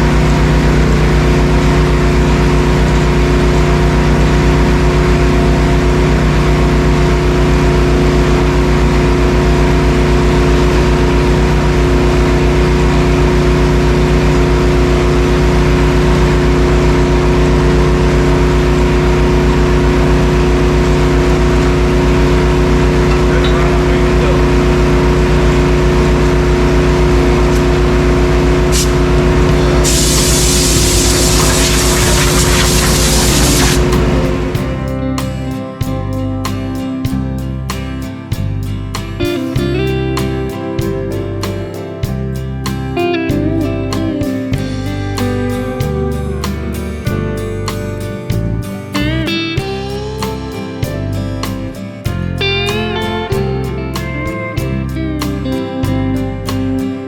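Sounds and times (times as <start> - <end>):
engine running steadily: 0.0 - 56.9
loud hiss: 28.6 - 34.9.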